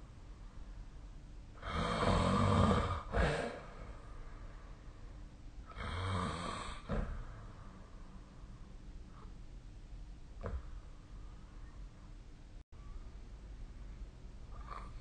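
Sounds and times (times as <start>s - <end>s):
person snoring: 1.6s - 4.1s, 5.7s - 7.2s.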